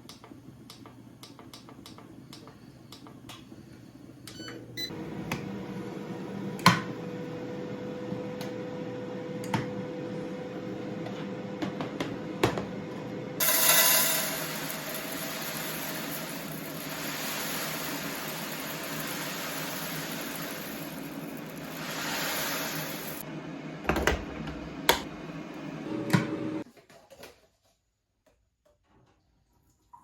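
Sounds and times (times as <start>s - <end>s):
small motor appliance running: 13.4s - 23.2s.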